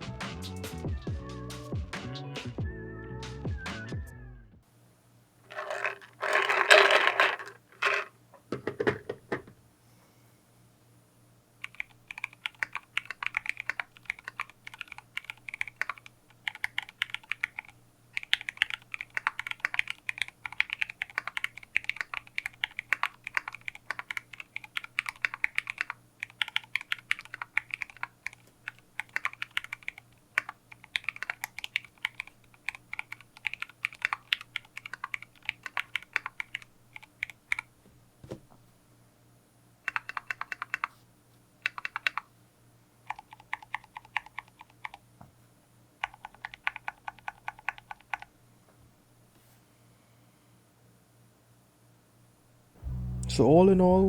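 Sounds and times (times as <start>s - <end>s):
keyboard keystroke clicks: 11.6s - 37.7s, 46.0s - 48.3s
short loud sound: 52.8s - 54.0s.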